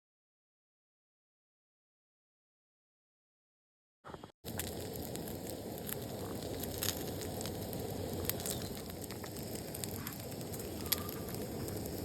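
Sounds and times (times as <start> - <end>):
sharp pops of fire: 4.4 - 12.0
wood fire crackling: 4.4 - 12.0.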